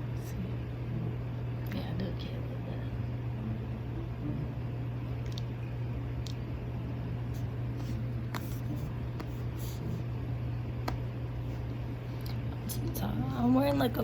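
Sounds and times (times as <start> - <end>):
low room hum: 0.0 - 14.0
faint clicks and taps: 10.8 - 11.0.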